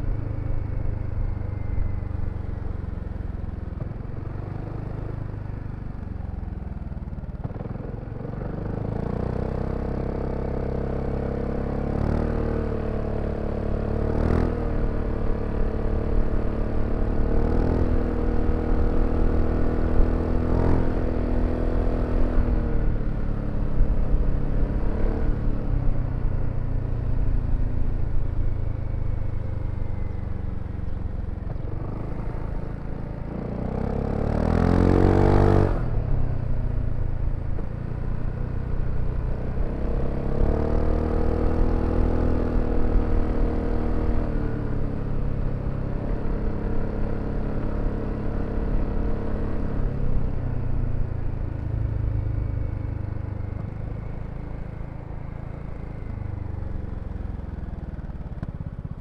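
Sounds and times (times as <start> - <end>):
road and wind noise: 0.0 - 59.0
scooter engine running: 53.6 - 59.0.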